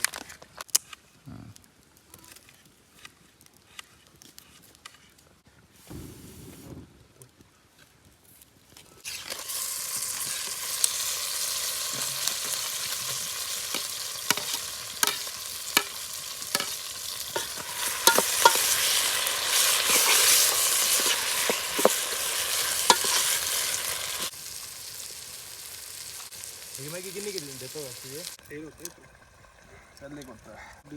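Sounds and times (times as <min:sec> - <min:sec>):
fire crackles and pops: 0:00.0 - 0:29.0
wood fire hissing: 0:09.0 - 0:28.6.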